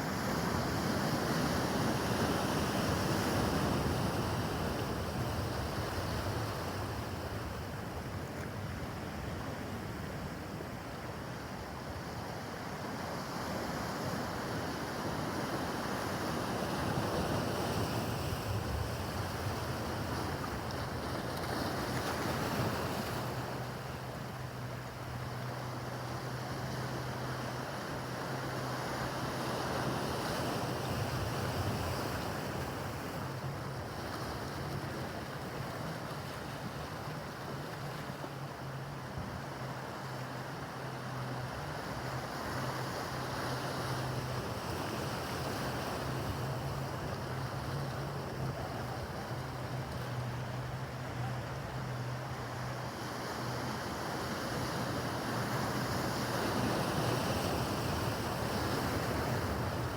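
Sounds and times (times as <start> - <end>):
motorboat engine drone: 0.0 - 59.9
waves washing: 15.3 - 59.9.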